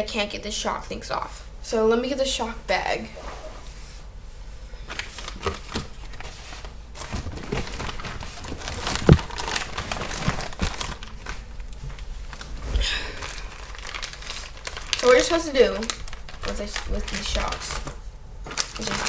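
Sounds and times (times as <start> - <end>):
plastic bag crinkling: 4.9 - 19.0.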